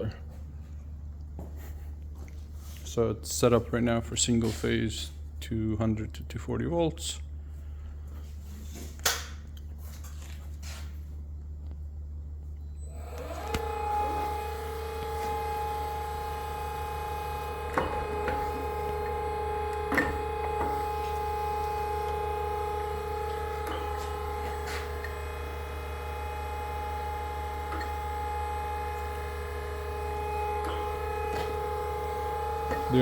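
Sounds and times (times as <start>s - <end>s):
grinder motor whining: 12.9s - 33.0s.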